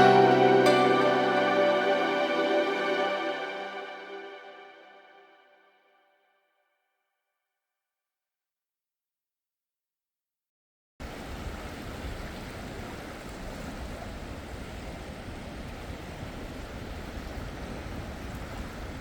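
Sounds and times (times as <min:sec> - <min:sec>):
sea surf washing on beach: 0:11.0 - 0:19.0
wind rumbling on microphone: 0:11.0 - 0:19.0.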